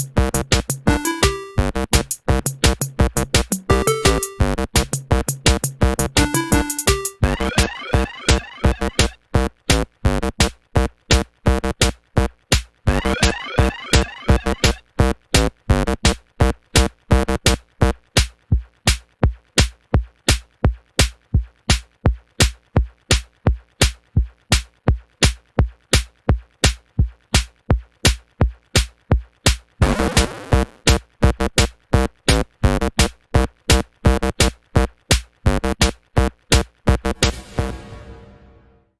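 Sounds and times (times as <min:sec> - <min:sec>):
electronic music with drum-machine beat: 0:00.0 - 0:11.9, 0:12.9 - 0:16.2, 0:29.8 - 0:37.4.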